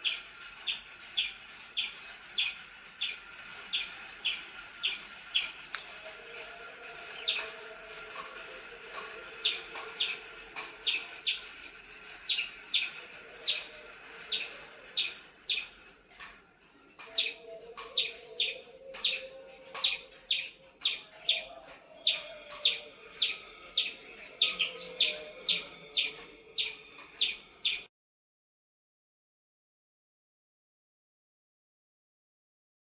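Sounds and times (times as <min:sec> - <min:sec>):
faint wavering calls: 0:00.0 - 0:27.9
sharp high falling calls: 0:17.0 - 0:27.9.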